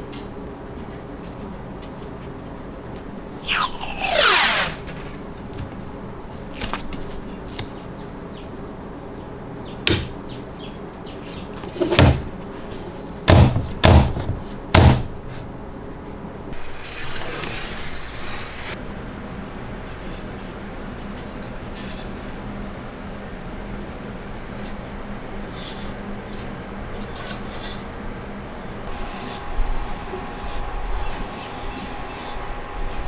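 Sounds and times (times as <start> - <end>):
falling scrape: 3.4 - 5.8, 16.6 - 18.8
heavy knocks: 13.3 - 15.1
steady hiss: 16.5 - 24.4.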